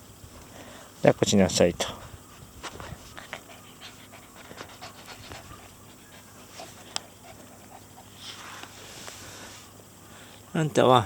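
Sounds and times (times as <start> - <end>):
puppy panting: 2.7 - 8.4.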